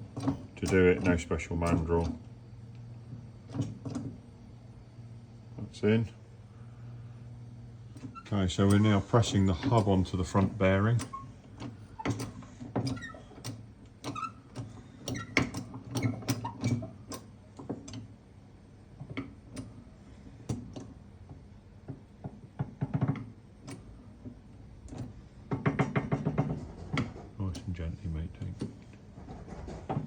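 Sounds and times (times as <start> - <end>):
metal parts clicking on a press: 0.2 - 2.2.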